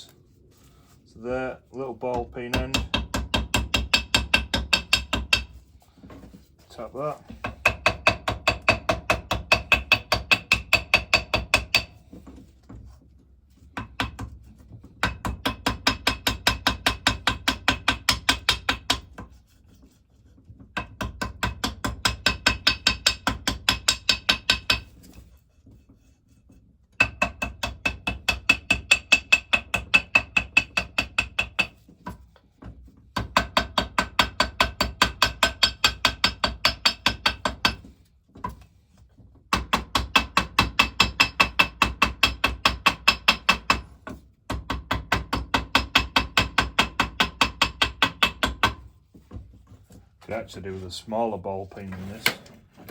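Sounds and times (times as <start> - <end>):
hammer tapping metal: 2.1 - 5.5, 39.5 - 43.8.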